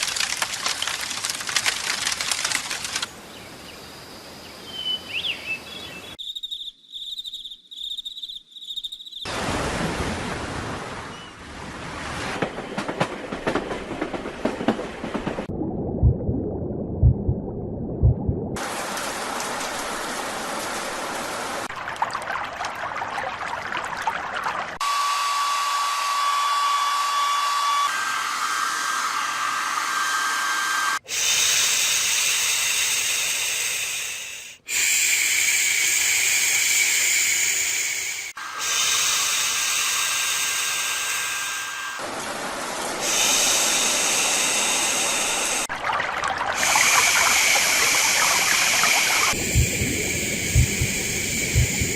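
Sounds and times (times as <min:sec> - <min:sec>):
thin steady tone: 0:46.6 - 0:51.9.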